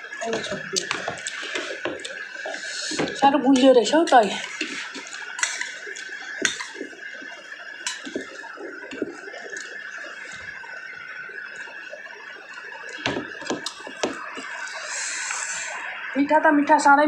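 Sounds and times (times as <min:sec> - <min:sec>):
steady hiss: 0:00.0 - 0:17.0
person chewing and eating: 0:00.2 - 0:03.2, 0:03.8 - 0:10.6.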